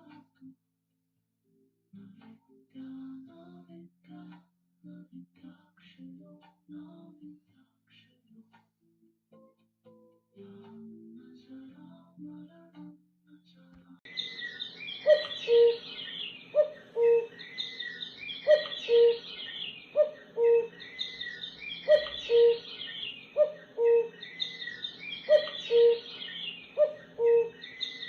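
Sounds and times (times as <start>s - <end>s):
small birds twittering: 14.1s - 28.0s
low two-note bird call: 14.2s - 28.0s.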